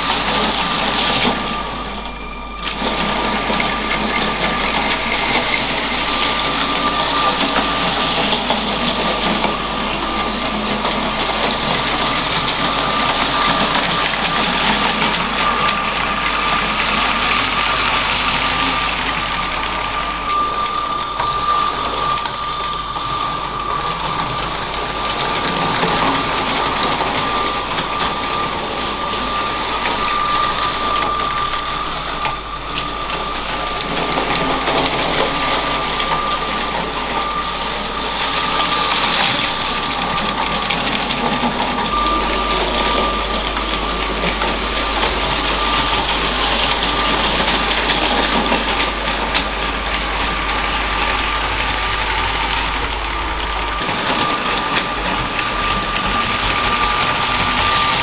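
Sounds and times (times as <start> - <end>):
toy train motor whine: 0.0 - 58.0
wheels ticking over track: 0.0 - 58.0.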